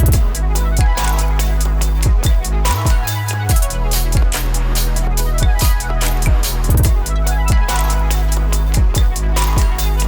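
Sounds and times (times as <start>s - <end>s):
deep kick drum: 0.0s - 1.0s, 1.8s - 4.5s, 5.2s - 7.8s, 8.5s - 10.0s
electronic background music: 0.0s - 10.0s.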